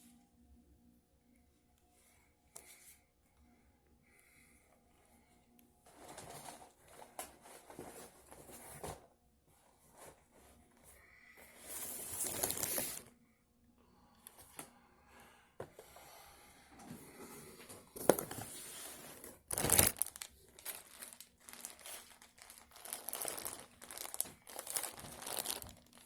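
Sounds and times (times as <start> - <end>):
paper rustling and crinkling: 5.9 - 9.0, 11.6 - 13.1, 18.0 - 26.0.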